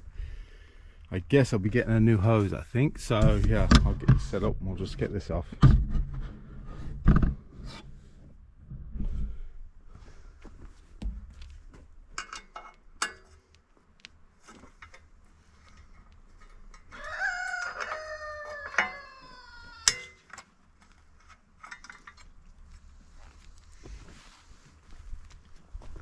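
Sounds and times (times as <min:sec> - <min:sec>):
metallic clinks and knocks: 0:12.1 - 0:13.4
rooster crowing: 0:16.9 - 0:20.1.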